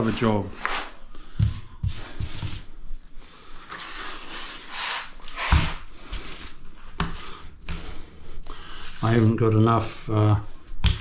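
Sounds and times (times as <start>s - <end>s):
grouting tools scraping tiles: 3.7s - 11.0s.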